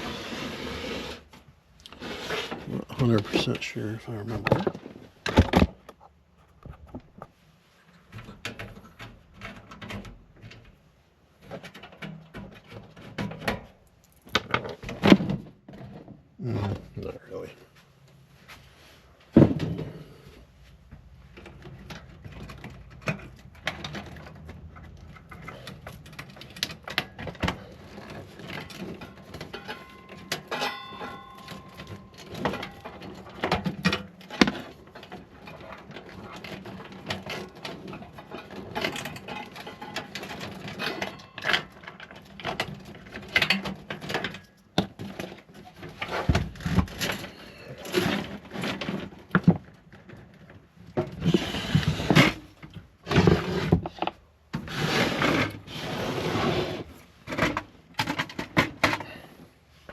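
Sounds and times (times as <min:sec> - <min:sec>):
computer case parts clicking and rattling: 0:02.8 - 0:07.4, 0:08.0 - 0:16.2, 0:21.2 - 0:51.3, 0:57.1 - 0:59.2
short metallic ring: 0:29.7 - 0:32.8.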